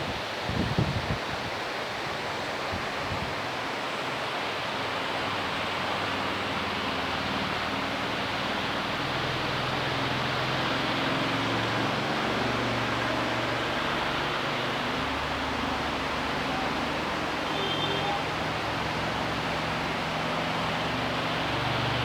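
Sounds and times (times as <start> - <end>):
heavy rain hissing: 4.5 - 22.0.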